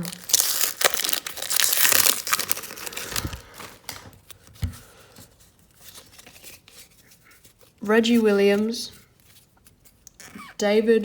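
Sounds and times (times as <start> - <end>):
wrapper tearing and crinkling: 0.0 - 4.5
cards rustling: 0.0 - 10.0.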